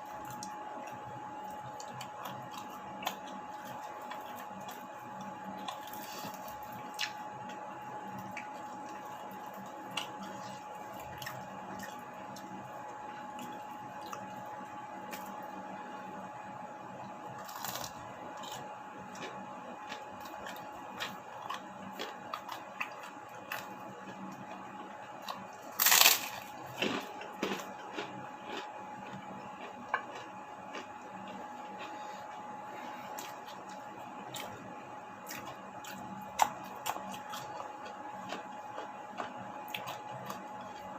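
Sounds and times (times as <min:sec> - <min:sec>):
chewing and crunching: 0:00.0 - 0:15.8, 0:17.3 - 0:40.9
faint steady hum: 0:00.0 - 0:40.9.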